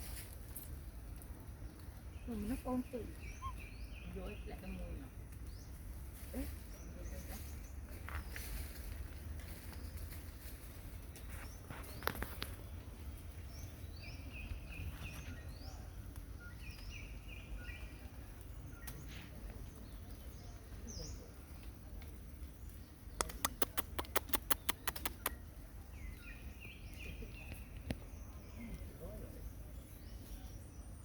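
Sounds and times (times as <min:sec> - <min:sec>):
high-pitched chirping calls: 0:03.1 - 0:04.0
fast sharp clicks: 0:23.2 - 0:25.4.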